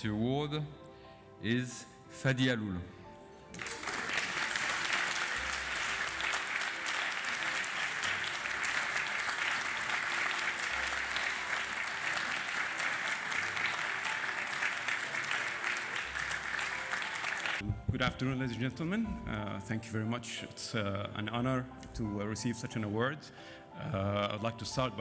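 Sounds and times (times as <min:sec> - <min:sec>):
audience applauding: 0:03.5 - 0:17.6.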